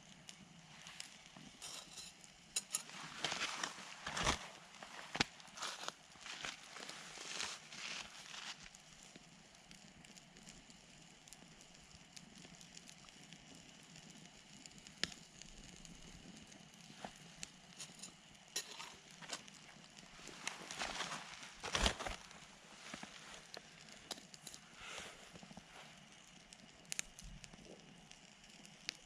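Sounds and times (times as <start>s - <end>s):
campfire crackling and popping: 0.0s - 29.0s
soft rustle: 2.7s - 8.8s, 16.8s - 27.0s.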